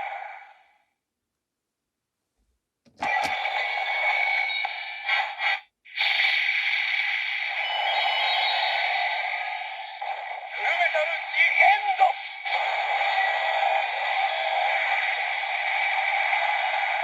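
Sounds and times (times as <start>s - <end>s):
toy speaker electronic sound effects: 3.0s - 15.6s.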